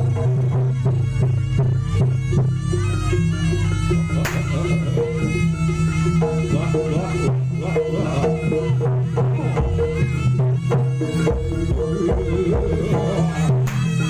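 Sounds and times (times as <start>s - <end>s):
gamelan ensemble music: 0.0s - 14.0s
sharp drum strokes: 4.1s - 14.0s.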